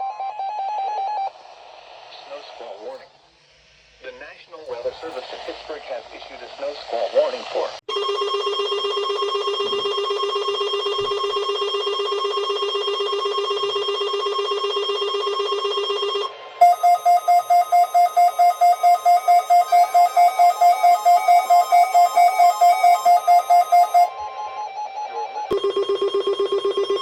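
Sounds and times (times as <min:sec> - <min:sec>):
steady electronic alarm tone: 0:07.9 - 0:24.2
rapid pulsed beeping: 0:16.6 - 0:24.1.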